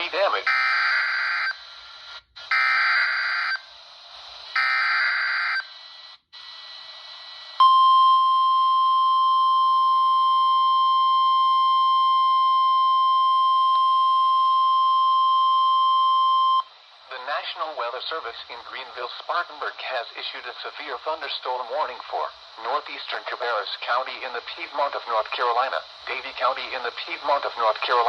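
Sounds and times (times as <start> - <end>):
radio static hiss: 0.0 - 7.6, 16.6 - 28.0
steady warning alarm tone: 0.4 - 1.6, 2.5 - 3.7, 4.5 - 5.7.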